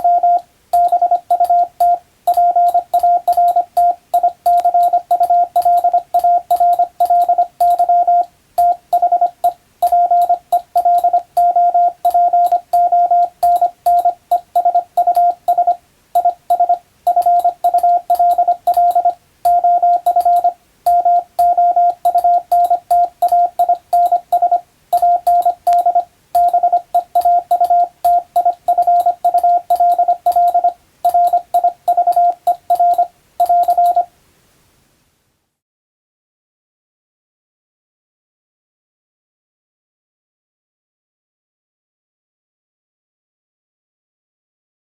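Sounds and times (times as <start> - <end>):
morse code beeps: 0.0 - 34.1.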